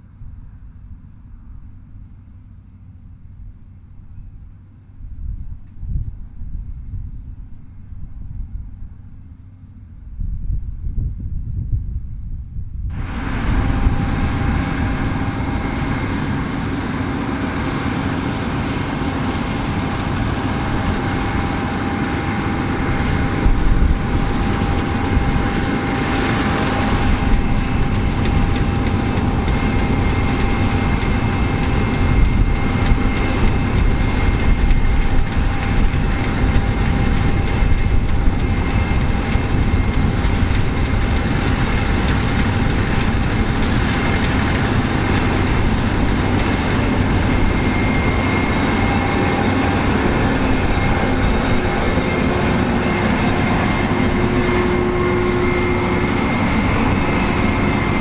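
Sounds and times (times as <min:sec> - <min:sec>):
combine harvester engine and machinery: 0:00.0 - 0:11.0, 0:12.8 - 0:58.0
steady whining tones: 0:12.8 - 0:58.0.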